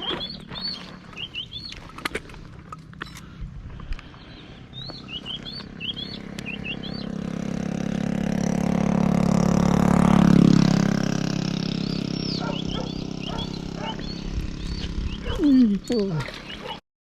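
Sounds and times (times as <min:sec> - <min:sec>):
small birds chirping: 0:00.0 - 0:02.1, 0:03.0 - 0:07.6, 0:11.6 - 0:16.8
engine passing by: 0:00.0 - 0:16.8.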